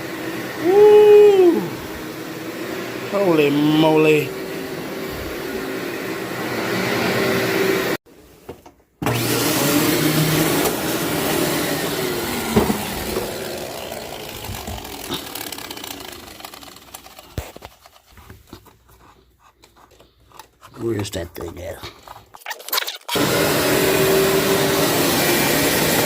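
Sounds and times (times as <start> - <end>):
vacuum cleaner on carpet: 0.0 - 8.4, 9.0 - 17.7, 23.1 - 26.0.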